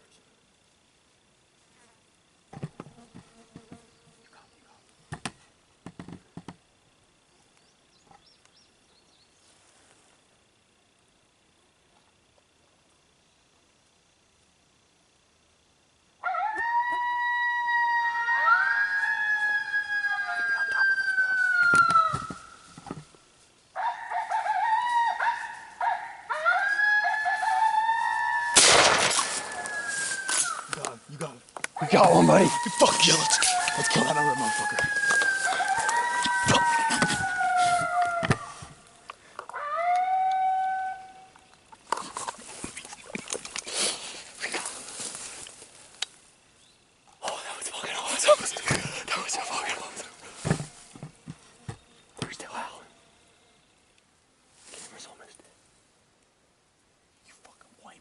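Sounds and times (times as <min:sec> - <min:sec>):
faint insect drone: 0:00.0 - 0:58.0
coyotes howling from electronic caller: 0:16.2 - 0:22.7, 0:23.8 - 0:28.6, 0:29.2 - 0:30.8, 0:31.8 - 0:38.9, 0:39.5 - 0:41.4
shotgun blast: 0:28.6 - 0:29.4.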